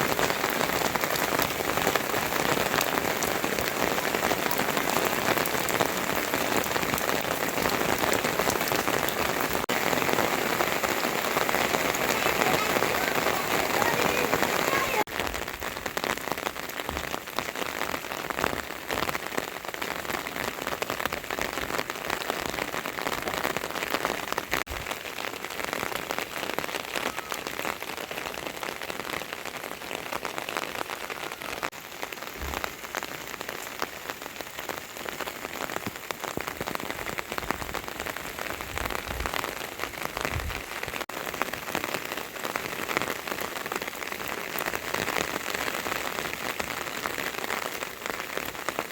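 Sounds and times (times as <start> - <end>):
rain hiss: 0.0 - 48.9
raindrops pattering on surfaces: 0.0 - 48.9.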